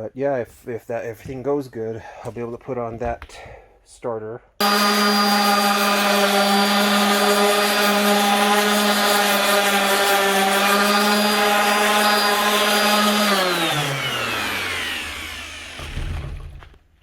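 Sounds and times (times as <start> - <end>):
electric sander running: 4.6 - 16.4.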